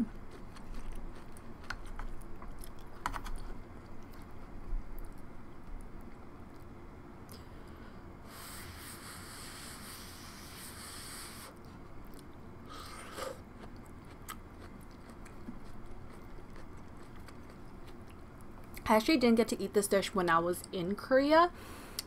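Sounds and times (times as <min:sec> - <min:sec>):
chewing food: 0:00.0 - 0:07.5, 0:11.6 - 0:18.9.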